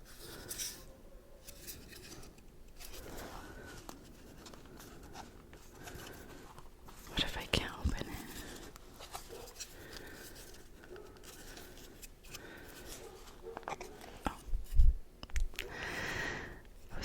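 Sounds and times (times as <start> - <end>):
packaging rustle: 1.4 - 14.2
packaging scratching and rubbing: 8.0 - 14.2.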